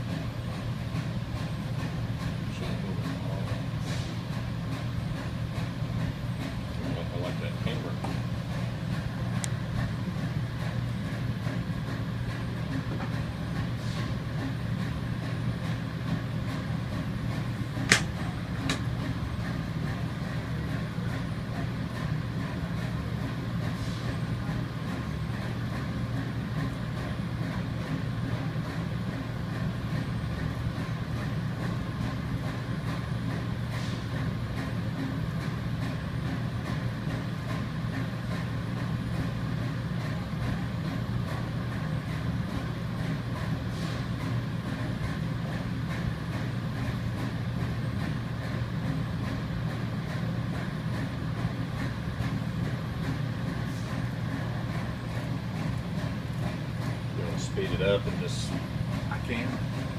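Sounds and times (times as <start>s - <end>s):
industrial machinery drone: 0.0s - 59.9s
sharp click: 17.9s - 18.8s.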